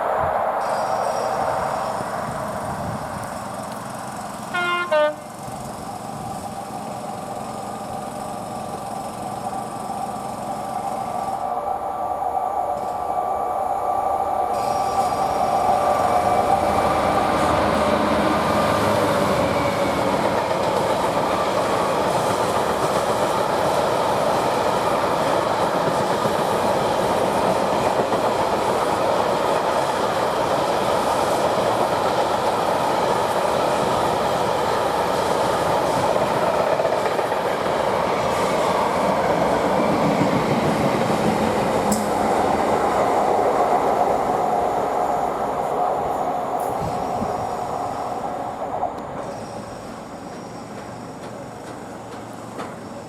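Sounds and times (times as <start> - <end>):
diesel train engine passing: 0.0 - 53.0
train horn blast: 4.5 - 5.4
train wagons rumbling: 14.5 - 53.0.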